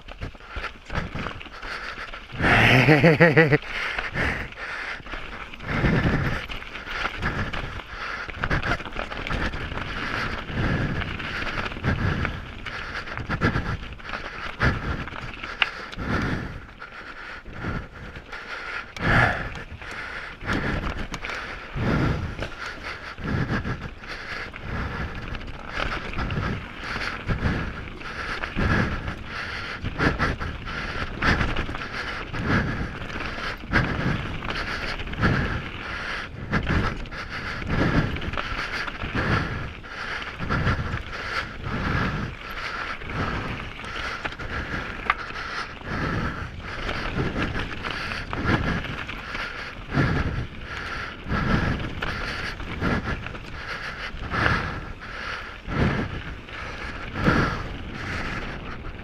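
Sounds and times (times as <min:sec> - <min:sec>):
bike rattling clicks: 0:00.0 - 0:59.0
bike wheels whirring: 0:00.0 - 0:59.0
heavy breathing on microphone: 0:00.0 - 0:59.0.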